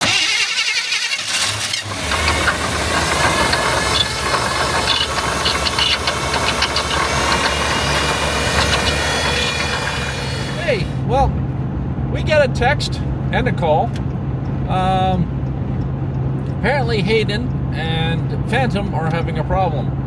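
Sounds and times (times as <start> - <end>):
engine knocking and rattling: 0.0 - 11.0.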